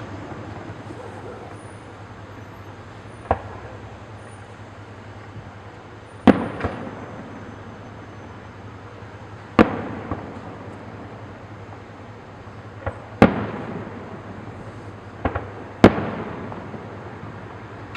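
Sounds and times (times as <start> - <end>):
fireworks bangs with echo: 3.1 - 4.6, 6.0 - 11.9, 12.6 - 17.9
small firework pops: 3.2 - 3.8, 6.2 - 7.0, 9.6 - 10.9, 12.8 - 13.8, 15.2 - 16.8.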